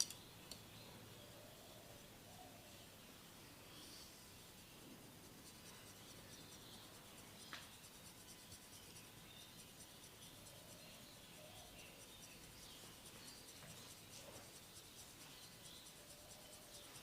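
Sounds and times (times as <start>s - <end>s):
hands rubbing hair and scalp: 4.2s - 17.0s.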